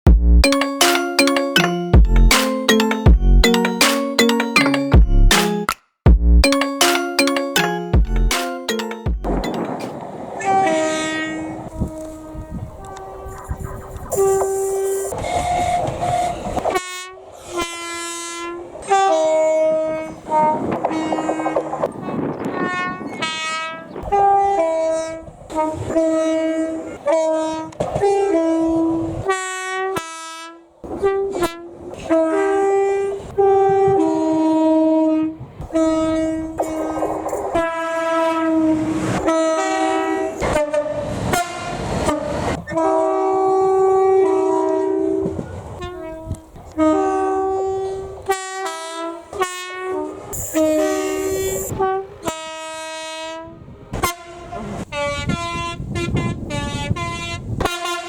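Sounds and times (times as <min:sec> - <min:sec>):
two-tone train horn blasts: 0:10.4 - 0:13.4, 0:14.2 - 0:37.0, 0:37.6 - 0:58.0.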